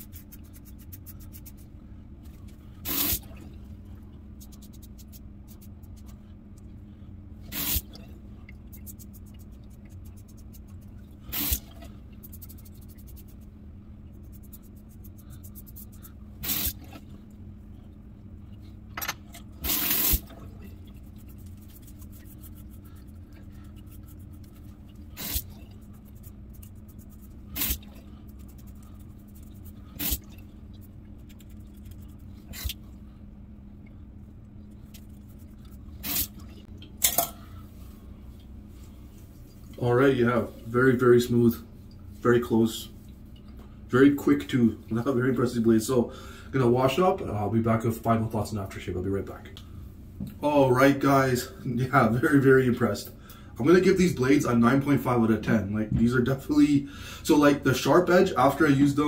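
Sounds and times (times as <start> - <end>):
razor scraping stubble: 0.0 - 1.7, 8.7 - 13.5, 14.2 - 17.0, 21.0 - 30.4
steady low hum: 0.0 - 59.0.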